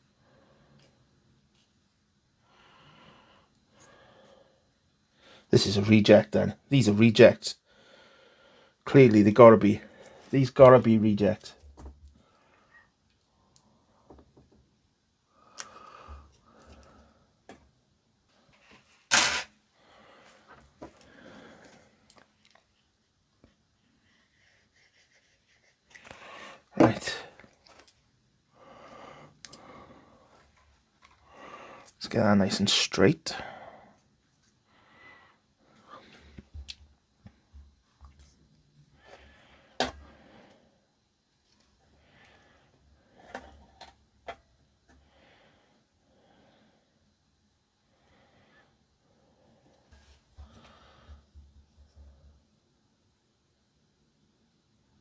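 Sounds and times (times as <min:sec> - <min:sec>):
parts clattering: 0:18.6 - 0:19.6.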